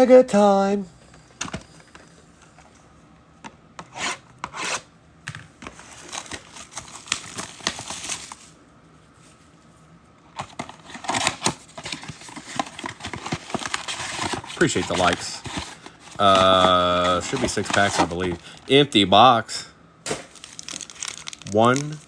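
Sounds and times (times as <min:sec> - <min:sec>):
plastic wrap tearing and crinkling: 0:05.9 - 0:08.4, 0:10.6 - 0:18.7, 0:20.1 - 0:22.0
cardboard rubbing: 0:10.9 - 0:18.5.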